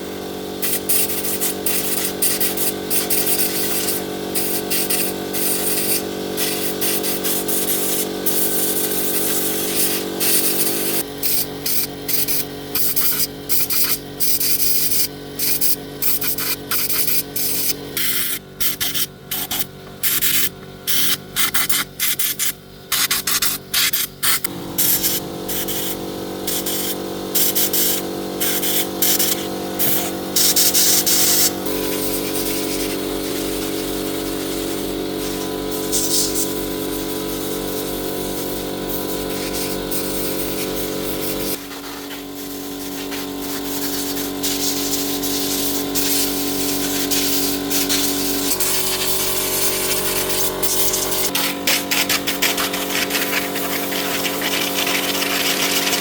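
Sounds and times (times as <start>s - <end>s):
power tool motor whining: 45.9s - 56.0s.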